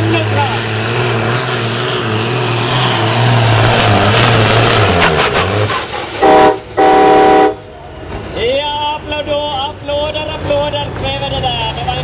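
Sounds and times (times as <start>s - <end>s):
diesel tractor engine under load: 0.0s - 12.0s
horn blasts: 6.2s - 7.8s.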